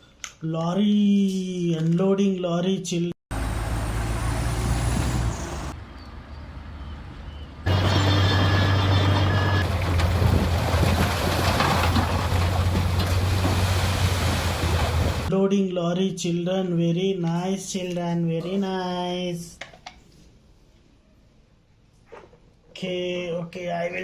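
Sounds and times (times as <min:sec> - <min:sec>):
heavy truck engine running: 0:03.3 - 0:05.8, 0:07.7 - 0:15.3.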